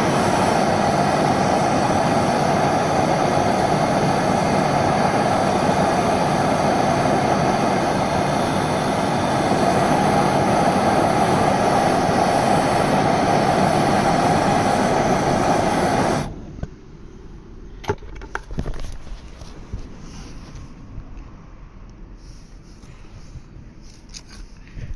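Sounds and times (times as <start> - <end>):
gas torch flame roaring: 0.0 - 16.7.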